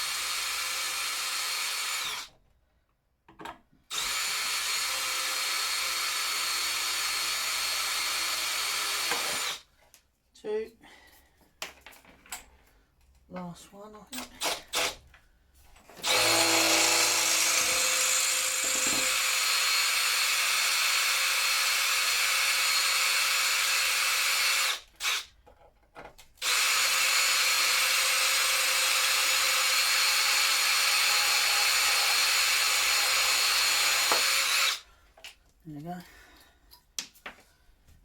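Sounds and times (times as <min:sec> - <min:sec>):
power drill drilling: 0:00.0 - 0:02.3, 0:03.9 - 0:09.6, 0:14.2 - 0:15.0, 0:16.0 - 0:25.3, 0:26.4 - 0:34.8.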